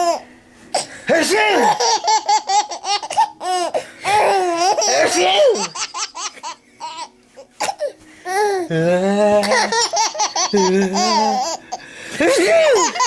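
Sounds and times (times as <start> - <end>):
small child laughing: 9.4 - 11.6, 12.2 - 13.0.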